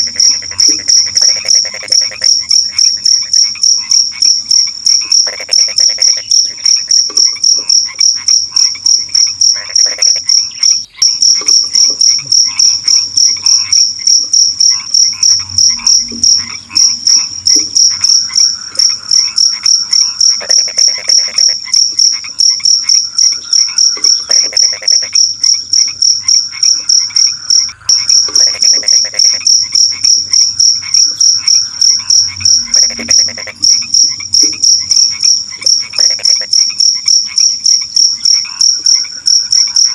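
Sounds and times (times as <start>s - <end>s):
crickets trilling: 0.0s - 39.9s
night animal calls: 0.0s - 39.9s.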